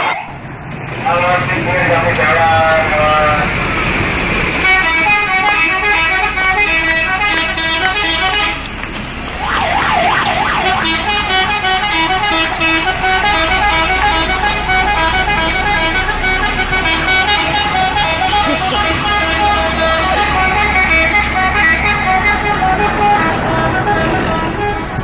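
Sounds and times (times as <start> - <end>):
siren-like horn wail: 4.6 - 8.7, 9.4 - 25.0
bus musical horn tune: 4.6 - 8.8, 10.5 - 25.0.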